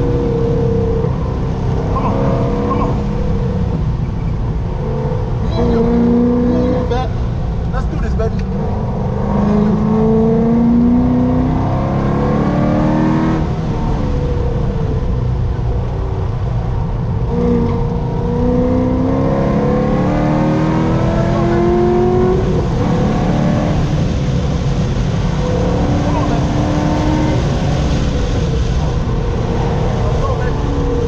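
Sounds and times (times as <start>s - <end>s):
car engine accelerating hard: 0.0s - 31.0s.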